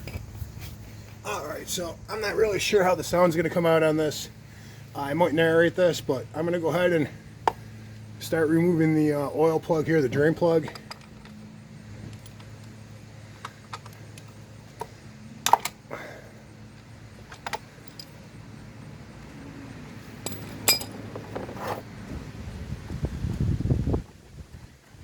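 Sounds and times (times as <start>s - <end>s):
low steady hum: 0.0s - 21.3s
socket tools clinking: 20.2s - 21.0s.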